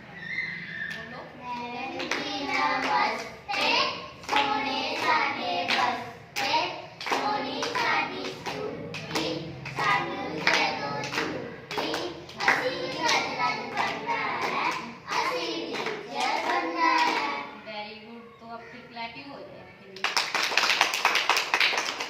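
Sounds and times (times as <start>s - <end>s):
children chanting in unison: 1.8s - 17.6s
hands clapping: 1.9s - 17.4s, 20.0s - 22.0s.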